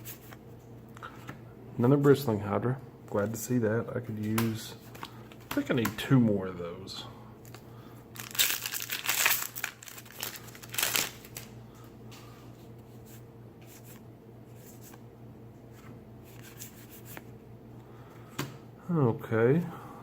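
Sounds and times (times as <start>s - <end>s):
foil wrapper crinkling and tearing: 7.4s - 11.6s.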